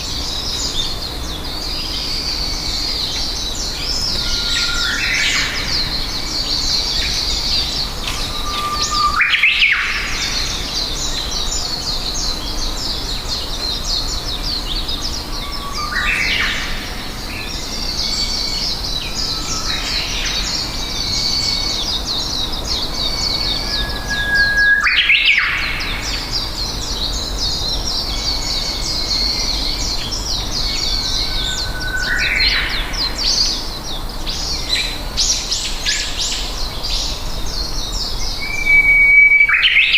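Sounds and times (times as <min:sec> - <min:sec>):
small birds chirping: 0:00.0 - 0:39.9
rising whistled bird call: 0:04.1 - 0:11.2, 0:23.0 - 0:26.3, 0:30.7 - 0:33.2, 0:38.4 - 0:39.9.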